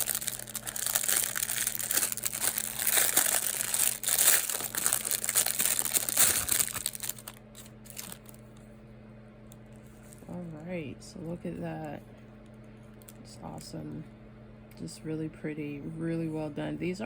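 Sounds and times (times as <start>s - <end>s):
plastic wrapping crinkling: 0.0s - 8.6s, 9.7s - 10.4s.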